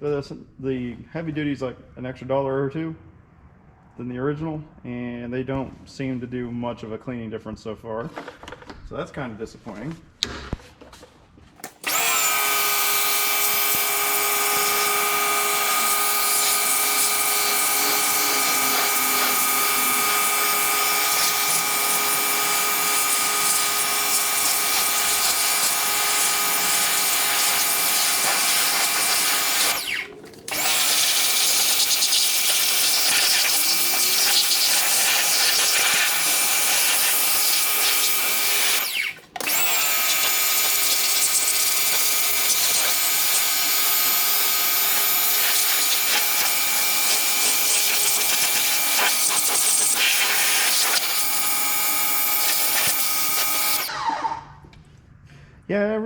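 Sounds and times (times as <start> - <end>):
pressure washer machine whine: 11.6 - 54.5
pressure washer spray hissing: 11.7 - 39.2, 39.9 - 53.9.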